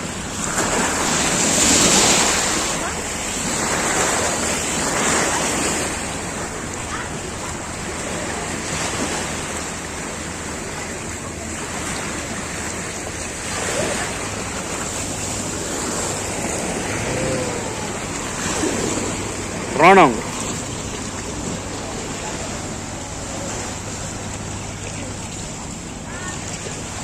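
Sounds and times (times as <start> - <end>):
sea water rushing: 0.0 - 27.0
wind: 0.0 - 27.0
low hum: 13.5 - 26.9.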